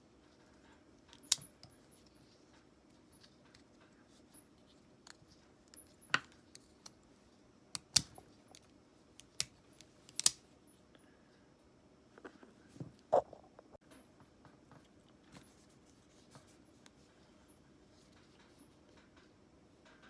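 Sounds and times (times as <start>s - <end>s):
metal parts clicking and tapping: 0.6s - 1.8s, 7.8s - 10.4s.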